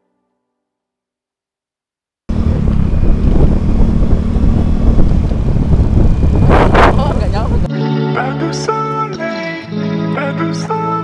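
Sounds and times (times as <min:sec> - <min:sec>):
loud motorcycle engine: 0:02.3 - 0:07.7
wind buffeting microphone: 0:02.3 - 0:07.7.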